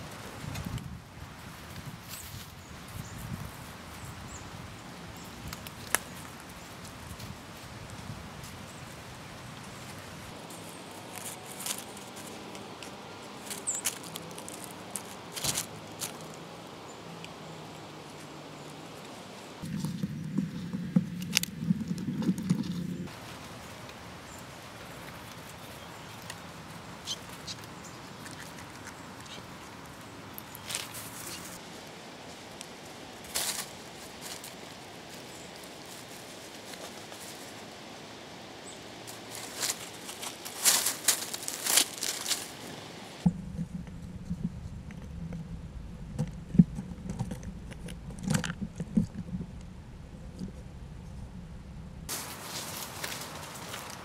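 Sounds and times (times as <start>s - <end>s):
steady background hiss: 0.0s - 48.1s, 49.3s - 54.0s
outdoor background: 0.0s - 54.0s.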